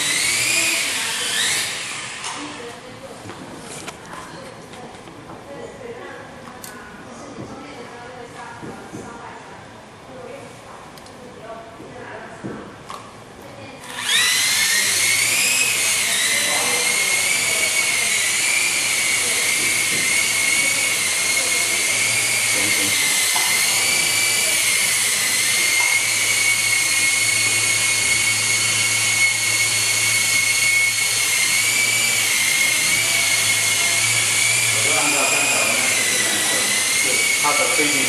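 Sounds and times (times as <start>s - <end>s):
toy helicopter motor whining: 0.0s - 2.9s, 13.8s - 38.0s.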